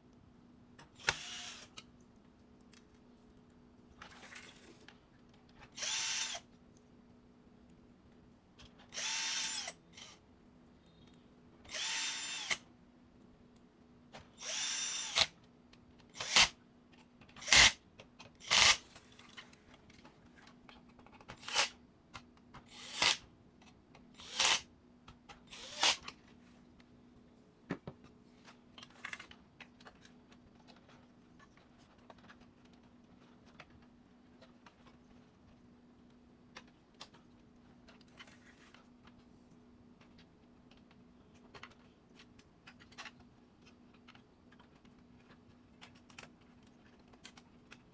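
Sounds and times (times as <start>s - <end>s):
electric screwdriver whine: 1.0s - 1.7s, 5.8s - 6.4s, 9.0s - 10.2s, 11.7s - 12.6s, 14.4s - 15.3s, 16.2s - 16.5s, 22.8s - 23.2s, 24.2s - 24.6s, 25.6s - 26.0s.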